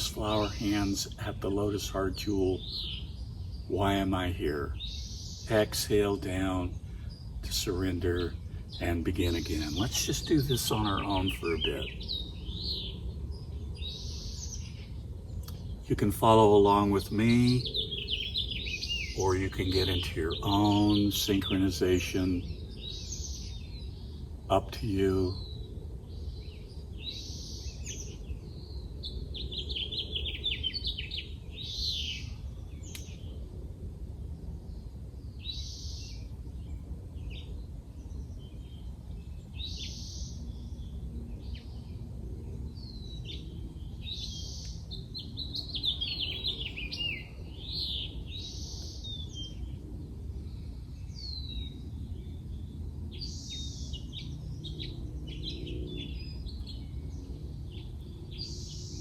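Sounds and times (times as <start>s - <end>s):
low steady rumble: 0.0s - 22.8s
birds calling and singing: 0.0s - 33.8s, 34.4s - 59.0s.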